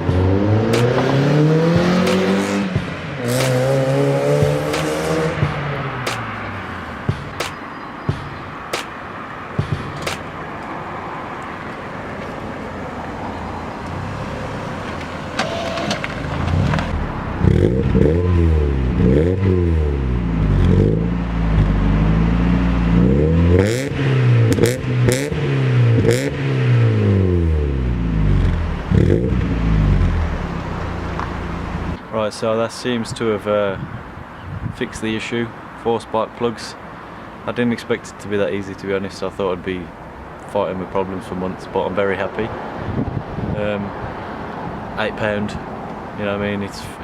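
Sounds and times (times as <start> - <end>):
car engine revving: 0.0 - 32.0.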